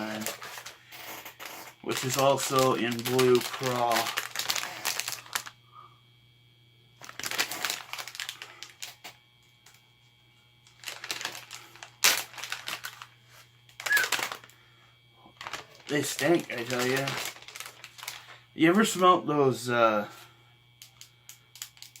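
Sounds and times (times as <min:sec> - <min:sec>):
plastic package crinkling: 0:00.0 - 0:05.6, 0:07.0 - 0:09.0, 0:10.7 - 0:14.6, 0:15.3 - 0:19.1, 0:20.8 - 0:22.0
low steady hum: 0:00.0 - 0:22.0.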